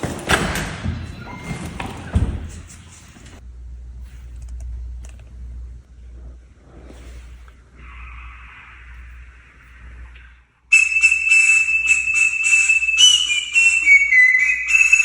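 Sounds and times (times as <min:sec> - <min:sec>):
high pulsing whistle tone: 0:07.9 - 0:15.0.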